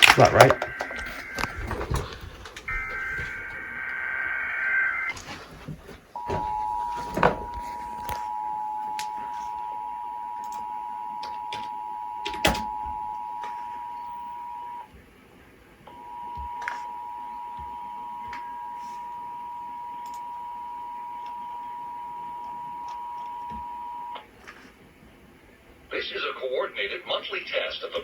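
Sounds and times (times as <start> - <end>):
two-tone attention signal: 2.7 - 5.1, 6.2 - 14.8
warbling two-tone data buzz: 2.7 - 5.1.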